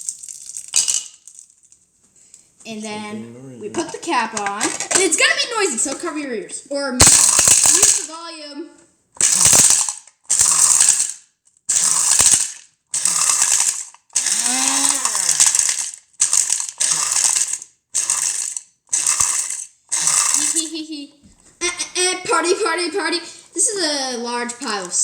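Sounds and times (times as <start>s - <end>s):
blender grinding hard candies: 0.0s - 1.4s, 3.7s - 6.0s, 7.0s - 8.2s, 9.2s - 20.8s, 24.5s - 25.0s.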